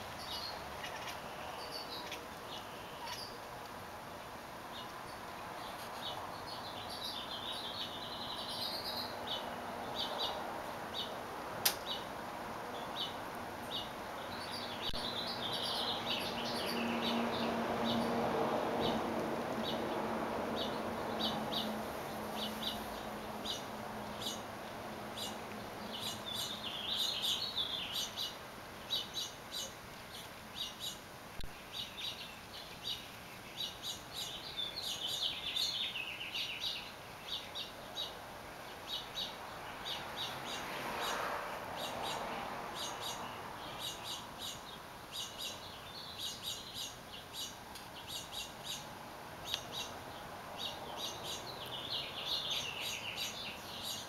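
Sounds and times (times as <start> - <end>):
small birds chirping: 0.0 - 54.0
bird warbling song: 0.2 - 3.4, 12.8 - 18.2, 25.2 - 41.2, 42.8 - 54.0.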